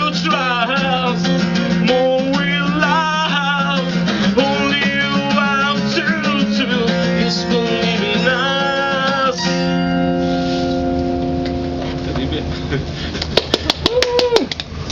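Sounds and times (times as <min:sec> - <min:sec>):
strummed acoustic guitar: 0:00.0 - 0:13.2.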